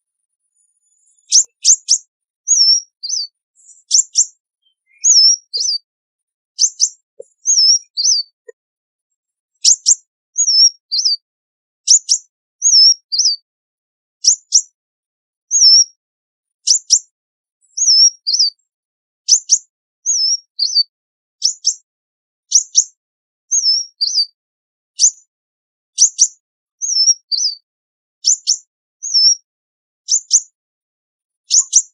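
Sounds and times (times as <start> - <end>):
sunbird singing: 0.0 - 5.9, 6.6 - 8.6, 9.5 - 11.2, 11.9 - 13.4, 15.5 - 15.9, 17.7 - 18.6, 20.1 - 21.8, 23.5 - 24.4, 26.1 - 27.6, 28.2 - 29.4, 31.5 - 31.9.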